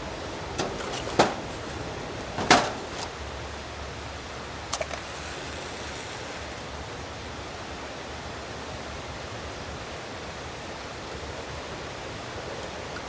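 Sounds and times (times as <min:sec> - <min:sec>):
steady outdoor rushing noise: 0:00.0 - 0:09.4.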